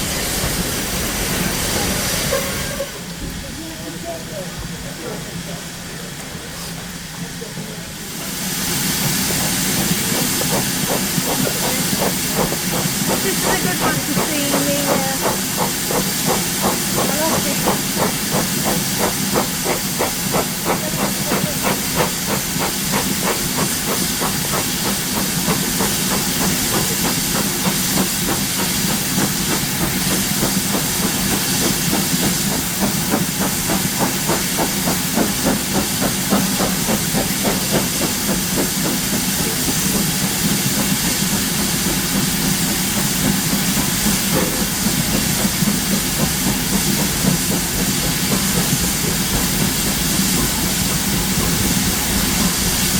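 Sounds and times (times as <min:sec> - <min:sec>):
steam hissing: 0:00.0 - 0:52.9
fast even pulsing: 0:09.8 - 0:38.4.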